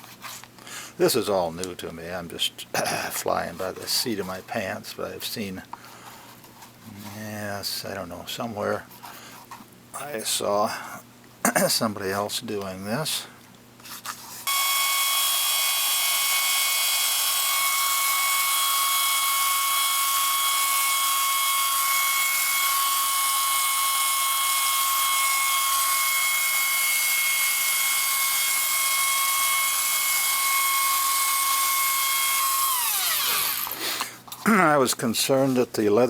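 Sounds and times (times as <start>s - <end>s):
heat gun whine and air rush: 14.5s - 34.0s.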